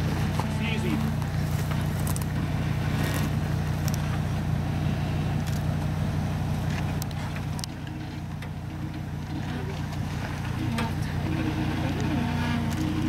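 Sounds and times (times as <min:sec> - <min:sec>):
truck engine at low revs: 0:00.0 - 0:13.0
stones clicking under tyres: 0:01.2 - 0:04.3, 0:05.4 - 0:11.2.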